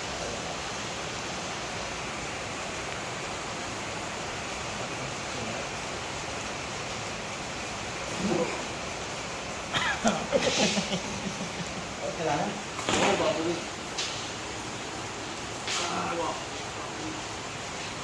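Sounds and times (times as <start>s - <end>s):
steady hiss: 0.0s - 18.0s.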